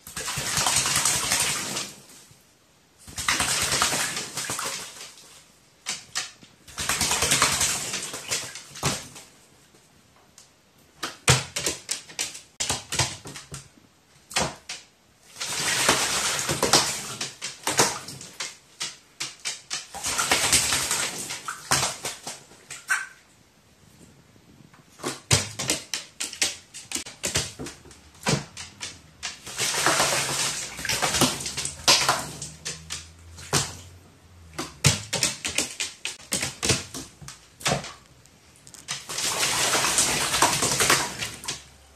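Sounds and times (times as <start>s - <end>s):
bird splashing in water: 14.3s - 23.2s, 25.0s - 38.1s, 38.8s - 41.7s.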